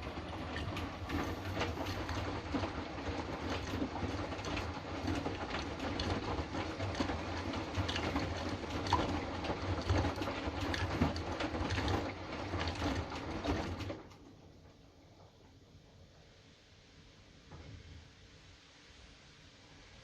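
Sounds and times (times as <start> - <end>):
clicks and knocks of tumbling load: 0.0 - 15.4
washing machine motor hum: 0.0 - 16.2.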